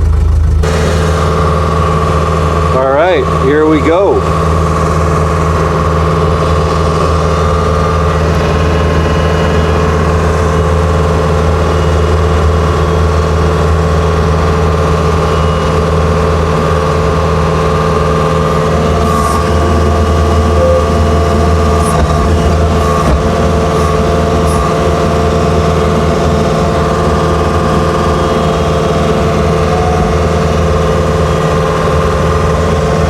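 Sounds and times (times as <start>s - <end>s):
loader engine running steadily: 0.0s - 33.0s.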